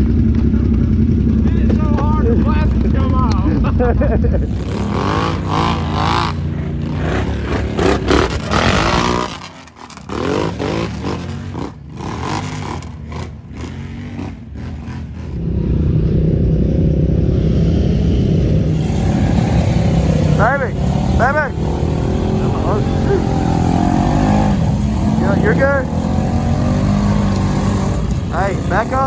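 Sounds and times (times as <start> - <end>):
engine knocks and clatter: 0.0 - 16.0, 18.0 - 29.0
off-road vehicle engine revving: 0.0 - 29.0.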